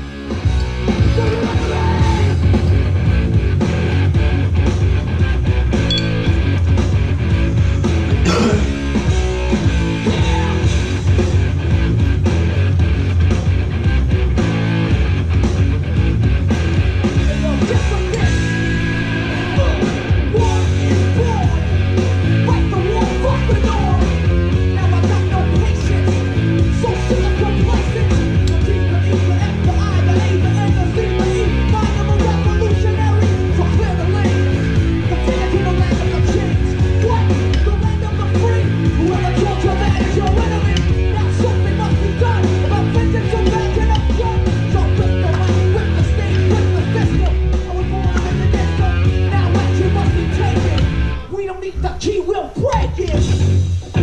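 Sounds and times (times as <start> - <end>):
loud rock music with singing: 0.0 - 54.0.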